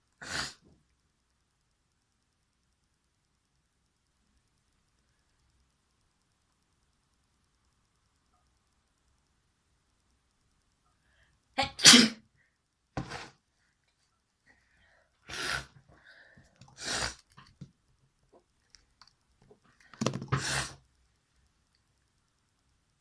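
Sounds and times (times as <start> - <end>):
person sneezing through nose: 0.2 - 0.6, 11.6 - 12.2, 16.8 - 17.2, 20.3 - 20.8.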